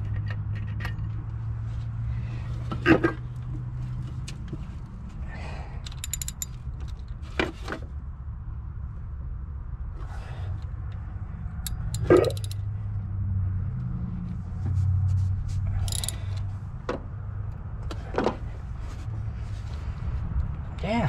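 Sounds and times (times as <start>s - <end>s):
steady low rumble: 7.9s - 21.0s.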